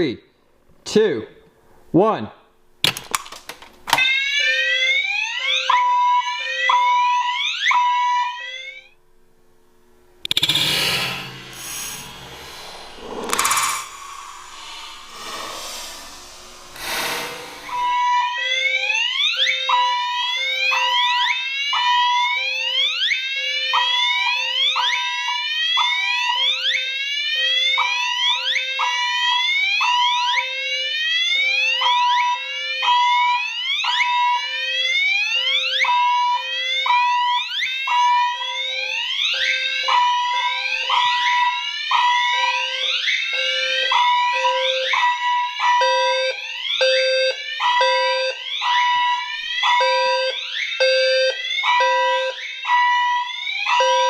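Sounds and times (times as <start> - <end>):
fire alarm beeps: 3.9 - 9.0, 17.7 - 54.0
fire alarm whoops: 3.9 - 9.0, 17.7 - 54.0.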